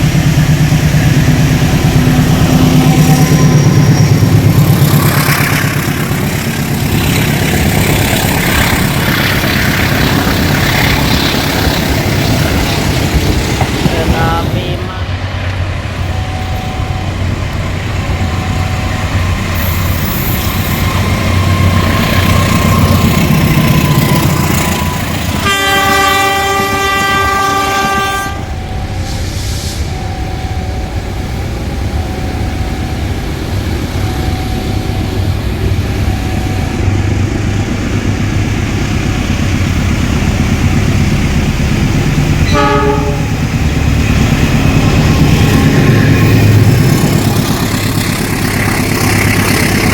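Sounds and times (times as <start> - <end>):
locomotive engine rumbling: 0.0 - 49.9
train air horn: 25.4 - 29.9, 42.4 - 43.4.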